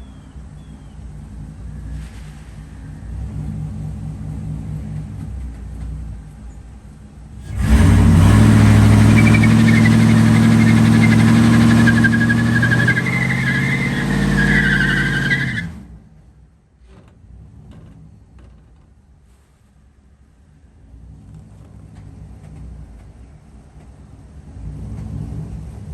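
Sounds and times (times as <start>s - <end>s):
tyres squealing: 7.4s - 15.8s
car engine revving high: 7.4s - 15.9s.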